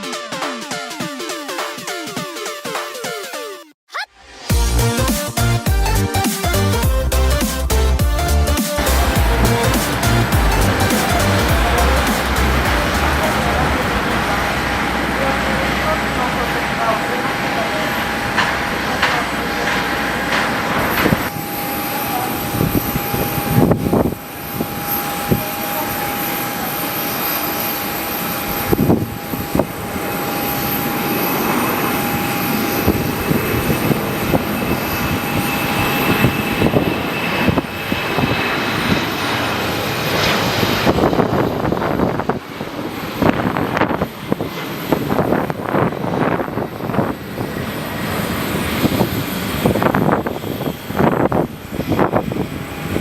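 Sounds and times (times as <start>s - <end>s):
jet engines whining at takeoff: 4.1s - 53.0s
wind buffeting microphone: 22.3s - 25.5s, 28.4s - 30.1s, 30.9s - 53.0s.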